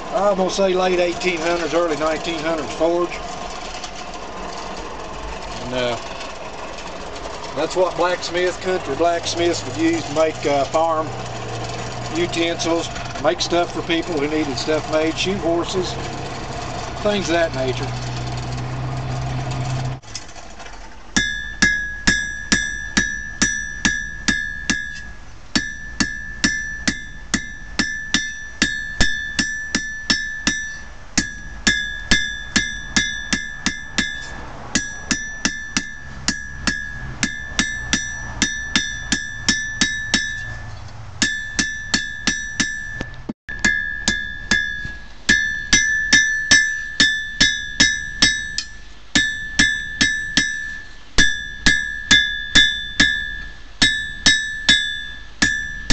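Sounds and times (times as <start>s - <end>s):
anvil ringing: 0.1s - 19.8s, 21.1s - 55.9s
hammer striking anvil: 21.2s - 55.9s.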